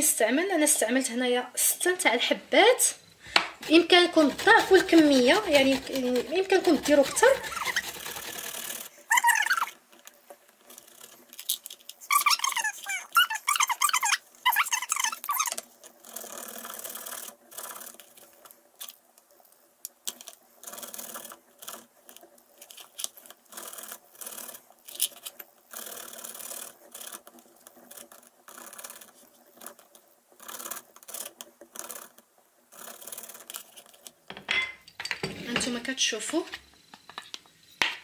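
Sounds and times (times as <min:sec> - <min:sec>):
garlic rasping on a hand grater: 0:03.6 - 0:09.7.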